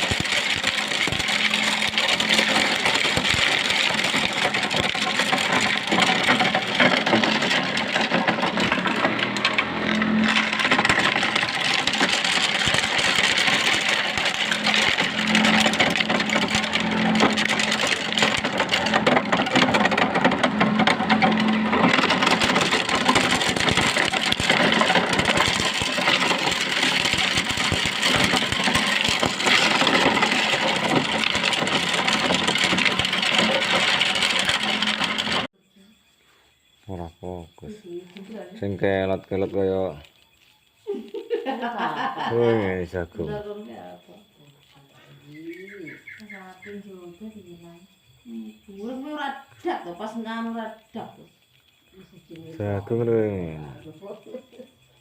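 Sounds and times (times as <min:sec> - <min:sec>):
corn kernels rattling: 0:00.0 - 0:35.5, 0:38.1 - 0:43.5, 0:52.4 - 0:54.6.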